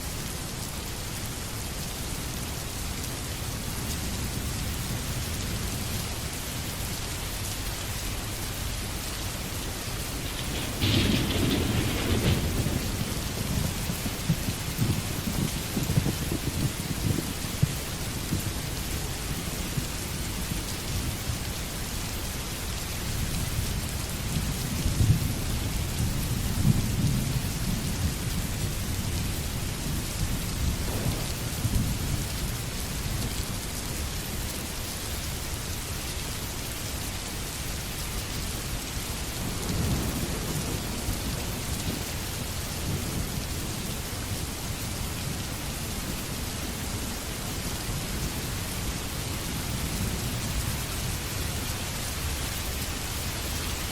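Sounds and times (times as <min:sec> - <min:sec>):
heavy rain falling: 0:00.0 - 0:53.9
thunder rumbling: 0:07.6 - 0:22.1, 0:23.2 - 0:34.7, 0:38.9 - 0:53.8.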